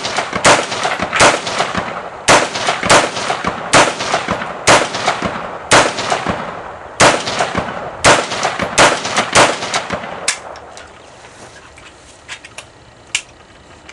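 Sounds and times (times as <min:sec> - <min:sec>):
rifle shots with echo: 0:00.0 - 0:10.7.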